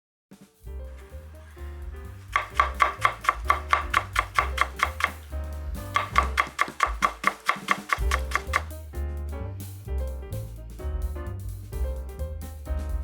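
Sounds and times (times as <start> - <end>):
background music: 0.4 - 13.0
knife chopping on cutting board: 2.1 - 5.3, 5.9 - 8.7.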